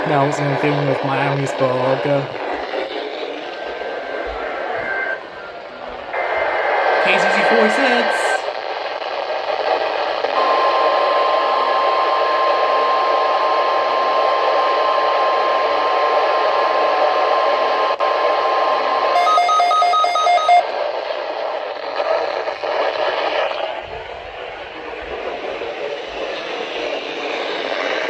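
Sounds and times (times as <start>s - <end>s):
radio static: 0.0s - 11.2s, 19.1s - 28.0s
steady weather alert tone: 4.0s - 8.5s, 19.2s - 20.7s
short two-pitch beeps: 19.2s - 20.7s.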